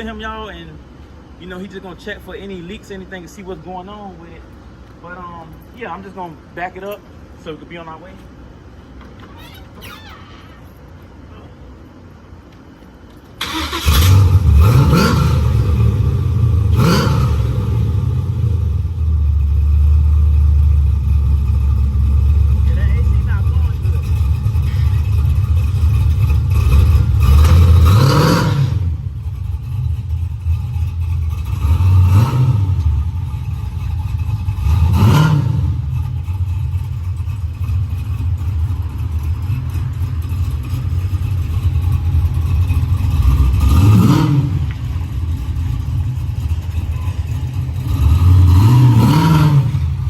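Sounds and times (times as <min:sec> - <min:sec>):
car engine revving: 0:13.4 - 0:50.0.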